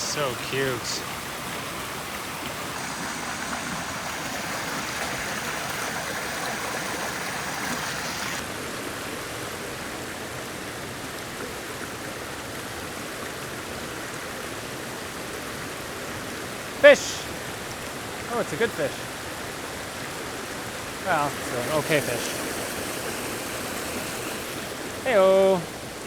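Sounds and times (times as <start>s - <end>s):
creek water rushing: 0.0s - 26.0s.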